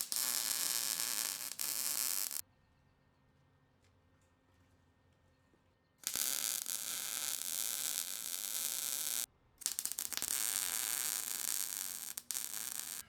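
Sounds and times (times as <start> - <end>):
welder hissing crackle: 0.0 - 2.4, 6.0 - 13.0.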